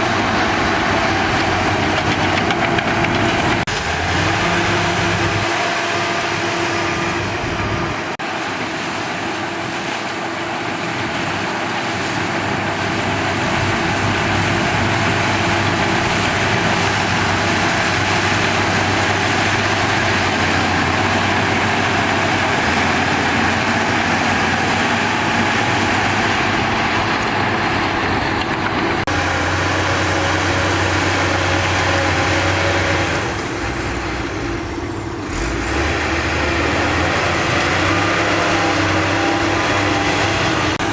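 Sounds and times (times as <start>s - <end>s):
bulldozer diesel engine under load: 0.0s - 40.9s.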